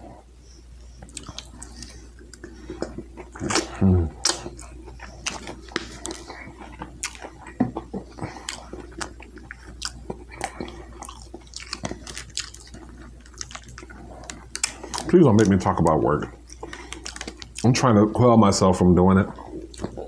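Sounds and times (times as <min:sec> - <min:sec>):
person chewing food: 0:00.0 - 0:17.8, 0:19.3 - 0:20.0.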